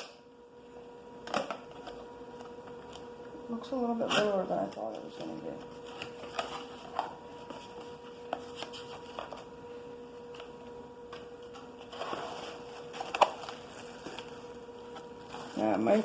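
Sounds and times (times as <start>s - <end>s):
faint steady hum: 0.0s - 16.0s
packaging rustle: 11.8s - 16.0s.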